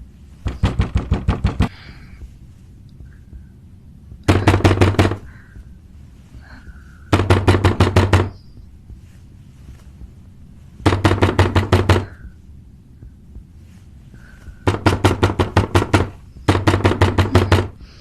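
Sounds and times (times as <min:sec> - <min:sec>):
banging on a door: 0:00.4 - 0:01.7, 0:04.3 - 0:05.3, 0:07.1 - 0:08.4, 0:10.8 - 0:12.2, 0:14.6 - 0:17.8.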